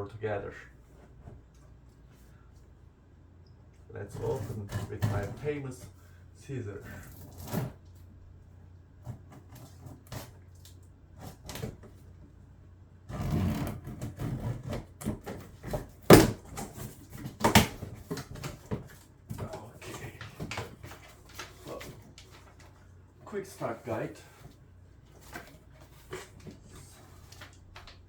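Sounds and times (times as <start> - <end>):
cardboard and packing rustling: 4.0 - 8.2, 9.0 - 12.4, 13.1 - 28.0.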